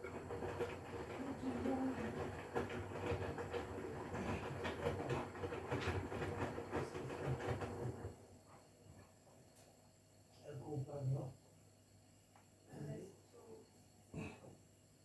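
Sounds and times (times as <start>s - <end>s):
washing machine drum clattering: 0.0s - 8.3s.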